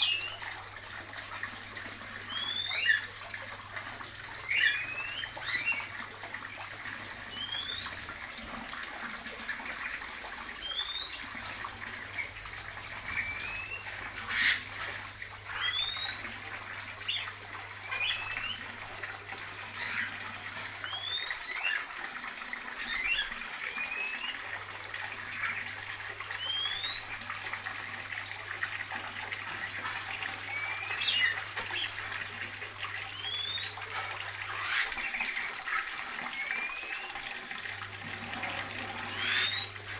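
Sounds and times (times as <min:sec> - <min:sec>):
small birds chirping: 0:02.3 - 0:03.1, 0:07.3 - 0:08.0, 0:10.6 - 0:11.3, 0:15.5 - 0:16.3, 0:17.0 - 0:18.7, 0:20.8 - 0:21.9, 0:30.5 - 0:32.0, 0:33.1 - 0:33.8, 0:39.0 - 0:39.9.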